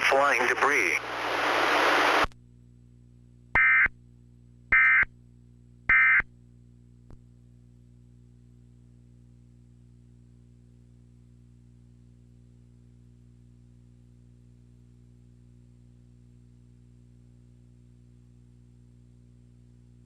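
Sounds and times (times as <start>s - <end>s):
faint steady hum: 0.0s - 20.0s
data tone bursts: 3.6s - 3.9s.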